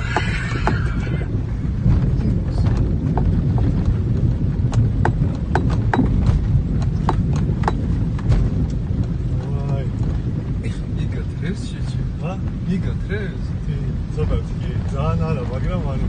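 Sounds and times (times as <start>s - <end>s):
diesel engine low rumble: 0.0s - 16.0s
sharp knocks and clicks: 2.6s - 9.8s.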